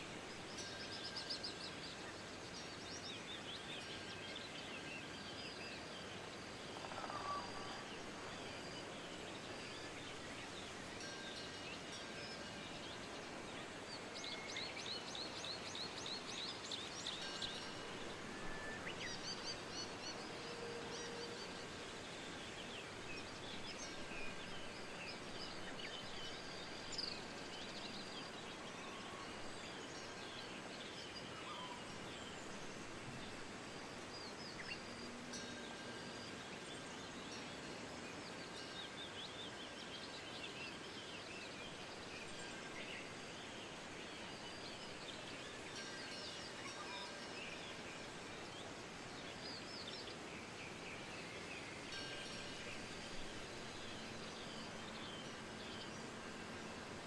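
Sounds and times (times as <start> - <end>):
songbirds chirping and trilling: 0.0 - 57.0
wind hiss: 0.0 - 57.0.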